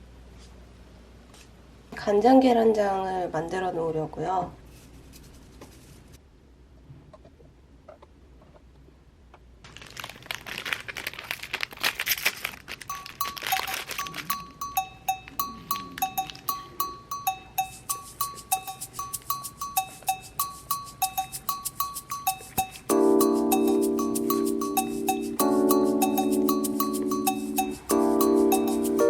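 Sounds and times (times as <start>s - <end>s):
loud crackling crinkling rustle: 9.6s - 14.5s
bright two-note background music: 12.9s - 29.0s.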